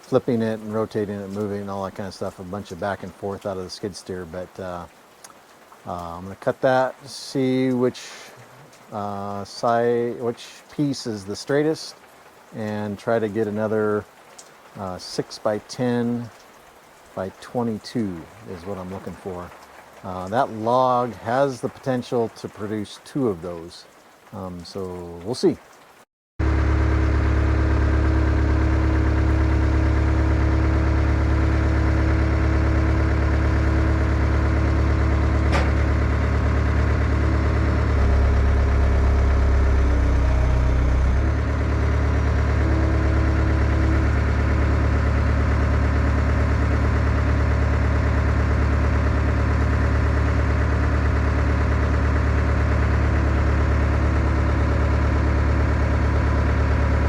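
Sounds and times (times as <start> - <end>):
skid steer engine running: 26.4 - 57.0.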